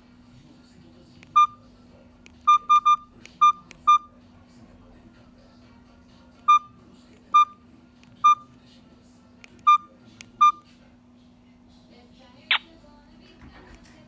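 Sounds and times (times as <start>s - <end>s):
faint steady hum: 0.0s - 14.0s
mobile phone beeps: 1.3s - 1.6s, 2.4s - 4.1s, 6.5s - 7.6s, 8.2s - 8.5s, 9.6s - 10.6s.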